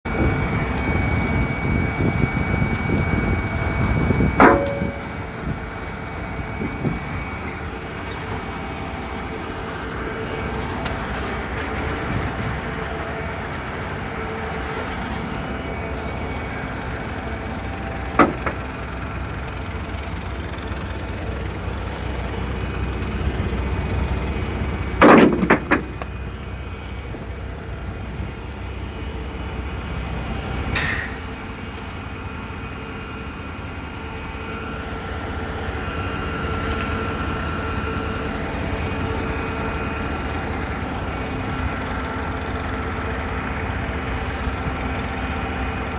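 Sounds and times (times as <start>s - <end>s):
concrete pump running: 0.1s - 45.9s
short hissing burst: 30.8s - 31.6s.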